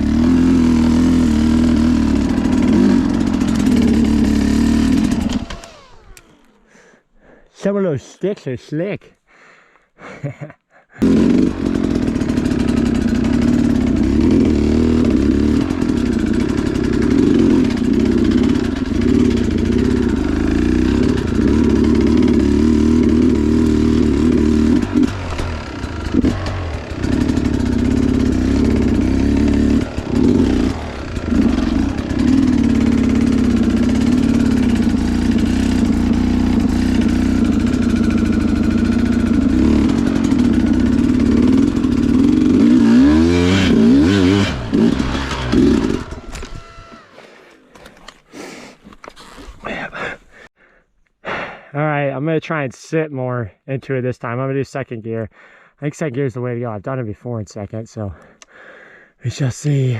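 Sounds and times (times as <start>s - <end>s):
dirt bike engine revving: 0.0s - 6.6s, 11.0s - 50.1s.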